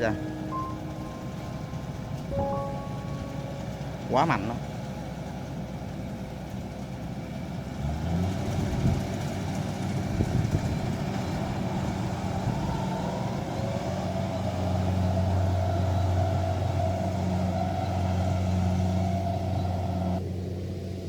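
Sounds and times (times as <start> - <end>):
faint rising whine: 0.0 - 5.0
combine harvester engine humming: 0.0 - 21.0.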